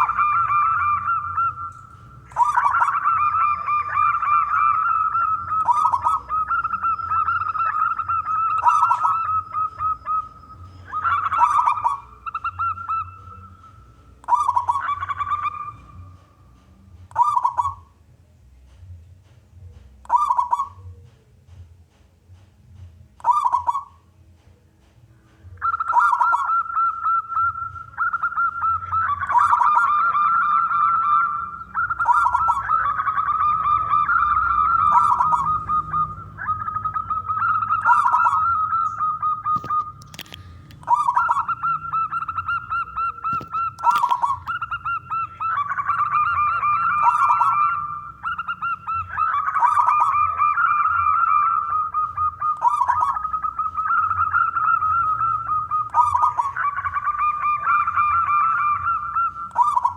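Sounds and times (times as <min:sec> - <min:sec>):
dove cooing: 0:00.0 - 0:18.0, 0:19.6 - 0:21.1, 0:23.2 - 0:24.2, 0:25.4 - 0:59.9
sharp clicks: 0:38.8 - 0:41.0, 0:43.2 - 0:44.6.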